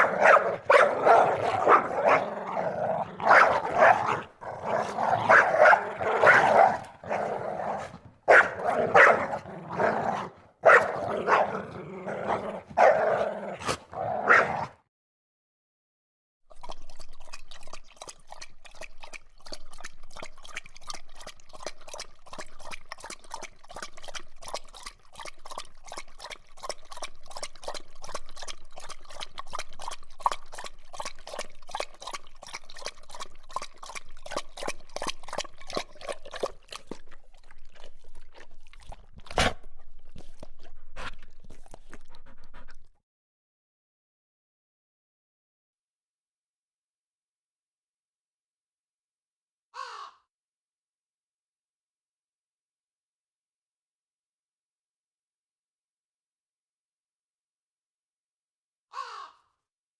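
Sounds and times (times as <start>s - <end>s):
dog barking and growling: 0.0s - 14.9s, 16.6s - 42.9s
short wet clicks: 16.5s - 42.9s.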